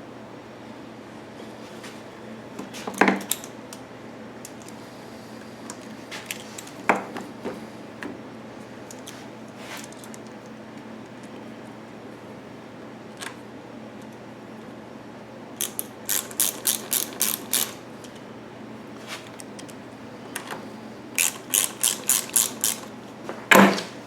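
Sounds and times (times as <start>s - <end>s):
ratchet clicking: 15.6s - 17.8s, 21.2s - 22.9s.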